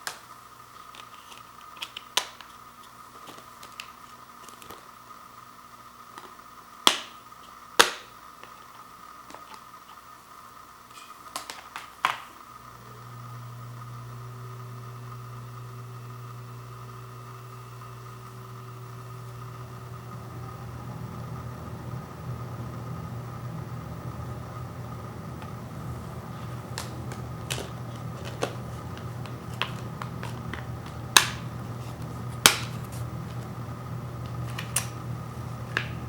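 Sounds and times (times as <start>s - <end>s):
steady low hum: 12.3s - 36.0s
plastic case clicks: 26.7s - 31.5s.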